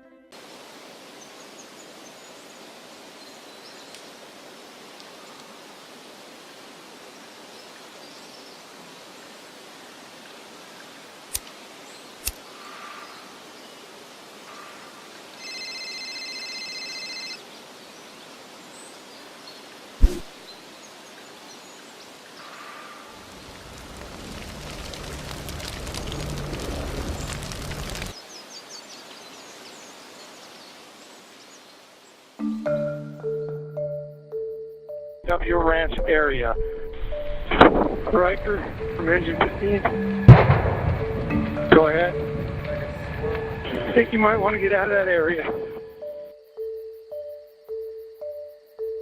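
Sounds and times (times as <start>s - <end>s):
outdoor background noise: 0.0s - 49.0s
rush of noise: 23.2s - 28.2s.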